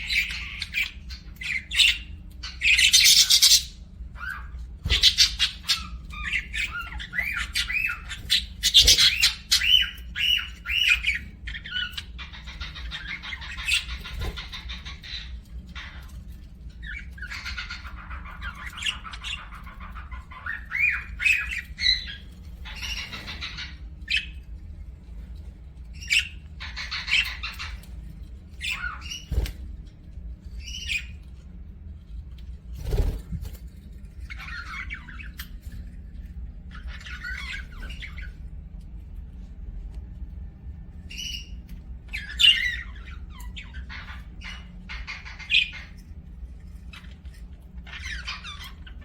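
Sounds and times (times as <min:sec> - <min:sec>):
budgerigars chattering: 0:00.0 - 0:16.1, 0:16.8 - 0:24.4, 0:41.1 - 0:46.0
steady low hum: 0:00.0 - 0:49.0.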